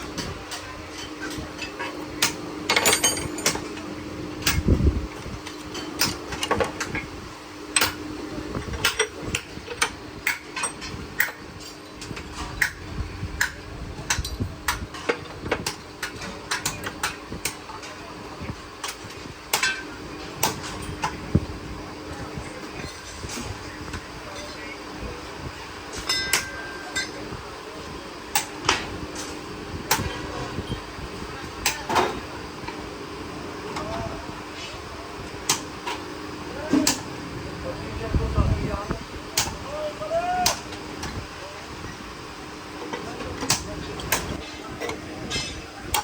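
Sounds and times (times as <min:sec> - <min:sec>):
metal tools clinking: 0:02.7 - 0:03.8.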